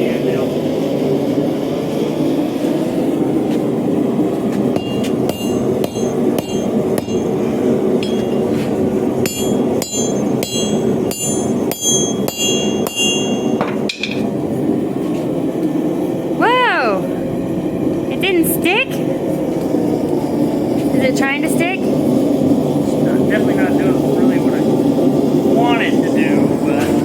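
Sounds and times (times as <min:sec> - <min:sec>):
forge roaring: 0:00.0 - 0:27.0
hammer striking steel on anvil: 0:04.7 - 0:07.4, 0:08.0 - 0:08.6, 0:09.2 - 0:14.3.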